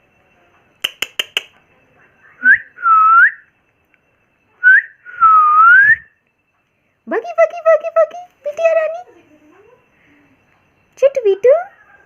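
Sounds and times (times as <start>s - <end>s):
parrot clicks: 0.8s - 1.6s.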